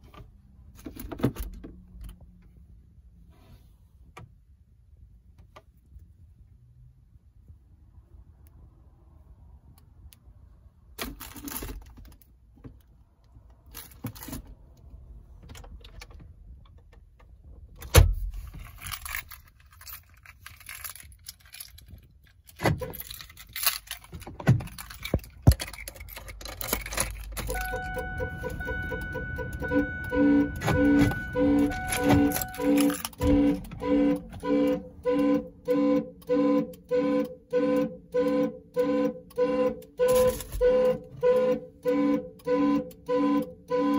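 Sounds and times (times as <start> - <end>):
car keys jangling: 11.0 - 12.4, 13.6 - 16.9, 17.8 - 34.9, 39.3 - 41.2
clicks and knocks of keys: 18.4 - 29.6, 30.8 - 33.4.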